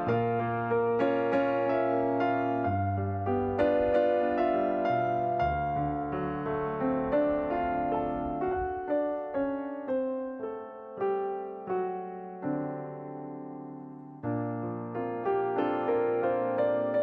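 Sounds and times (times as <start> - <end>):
gentle solo piano melody: 0.0 - 17.0.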